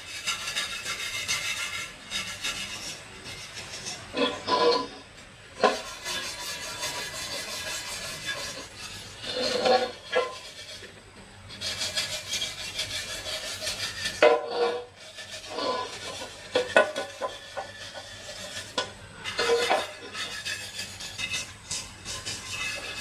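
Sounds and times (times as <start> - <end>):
scraping and rasping: 0.0 - 23.0.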